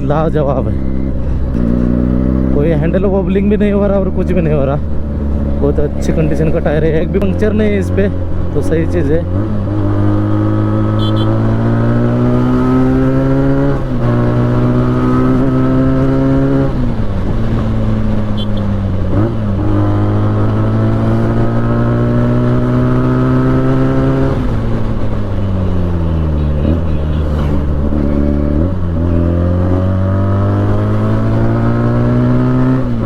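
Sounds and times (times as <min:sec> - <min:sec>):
motorcycle engine under way: 0:00.8 - 0:33.0.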